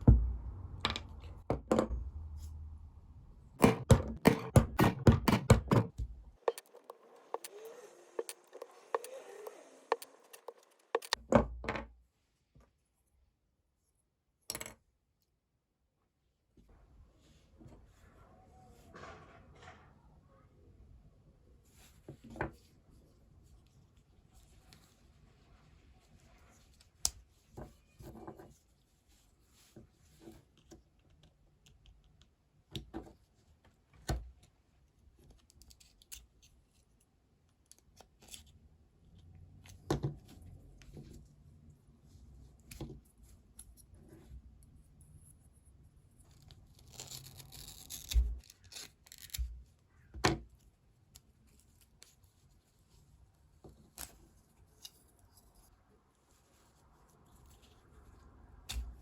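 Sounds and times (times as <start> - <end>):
tools clicking and knocking: 3.6 - 11.2.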